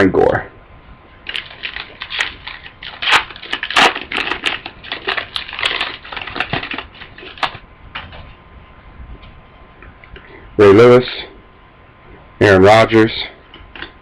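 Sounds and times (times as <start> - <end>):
foil wrapper crinkling: 1.2 - 7.6
cards being handled: 1.3 - 7.6.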